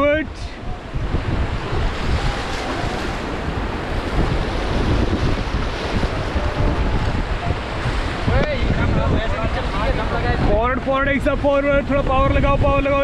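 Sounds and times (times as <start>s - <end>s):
wind buffeting microphone: 0.0s - 13.0s
river water rushing: 0.3s - 8.3s, 11.3s - 13.0s.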